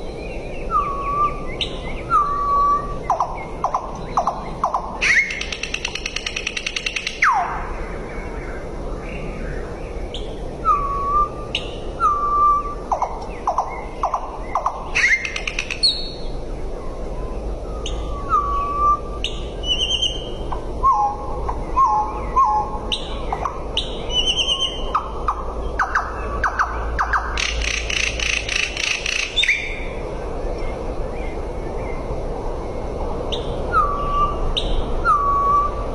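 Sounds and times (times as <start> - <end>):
steady low hum: 0.0 - 35.9
bird whistling and chirping: 0.5 - 7.6, 10.2 - 16.2, 17.7 - 29.8, 33.3 - 35.8.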